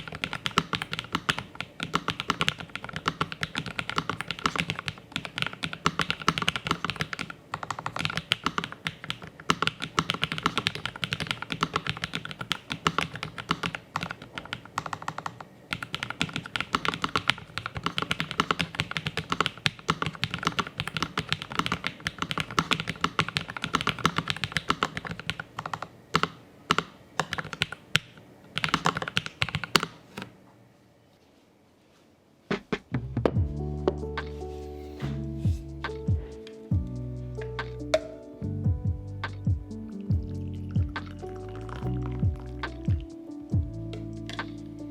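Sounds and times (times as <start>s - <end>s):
mechanical keyboard typing: 0.0s - 30.3s, 39.3s - 43.1s.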